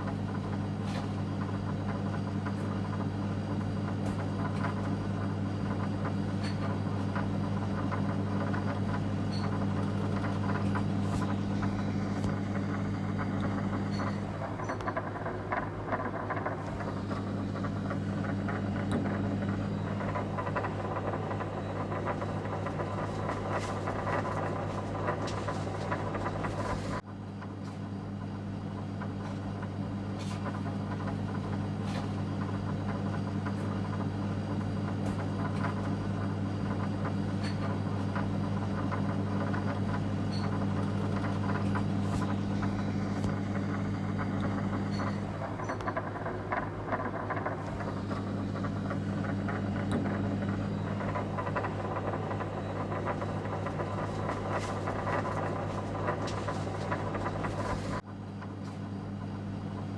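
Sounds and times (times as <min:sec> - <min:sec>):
machine rumble with hum and rattle: 0:00.0 - 0:59.9.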